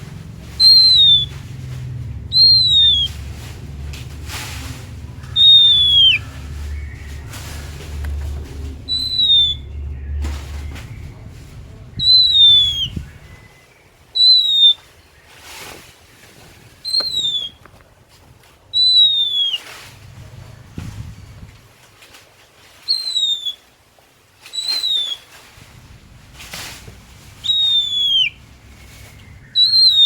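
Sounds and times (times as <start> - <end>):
bird whistling downslurred note: 0.6 - 1.4, 2.3 - 3.1, 5.3 - 6.3, 8.9 - 10.0, 12.0 - 13.0, 14.2 - 14.8, 16.9 - 17.6, 18.8 - 19.6, 22.9 - 23.6, 24.6 - 25.2, 27.4 - 28.4, 29.6 - 30.0.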